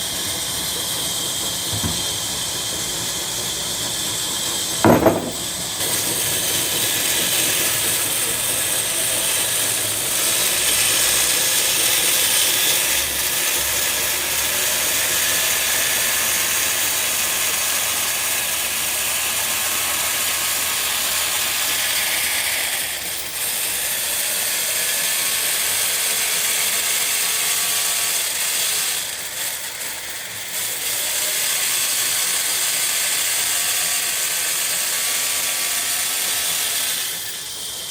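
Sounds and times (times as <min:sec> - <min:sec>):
sharp loud knock: 0:01.7 - 0:02.1, 0:04.8 - 0:05.6.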